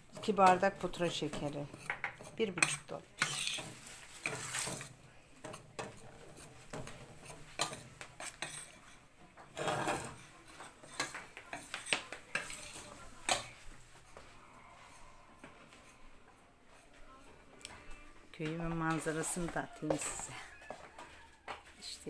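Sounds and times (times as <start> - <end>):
spoon scraping pot: 0.0 - 17.3, 18.7 - 21.0
spoon knocking against pot: 0.2 - 8.8.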